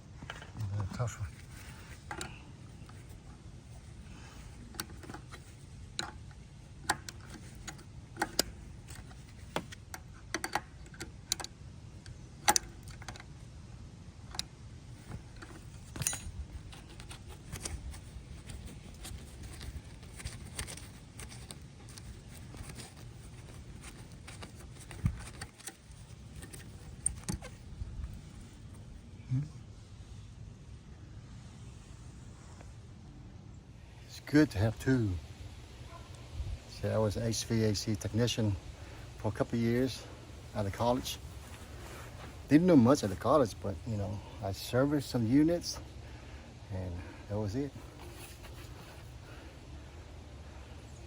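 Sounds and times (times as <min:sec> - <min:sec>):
steady low hum: 0:00.0 - 0:51.0
metal hand tools clinking: 0:15.9 - 0:16.4.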